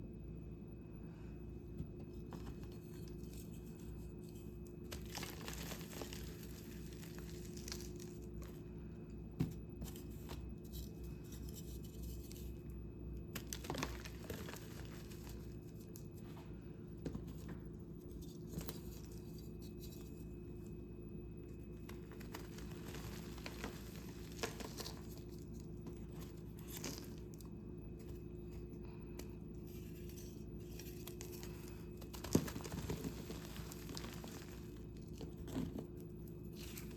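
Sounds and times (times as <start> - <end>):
steady low hum: 0.0 - 36.9
chalk crunching and crackling: 3.0 - 8.6, 21.8 - 27.5, 29.6 - 36.9.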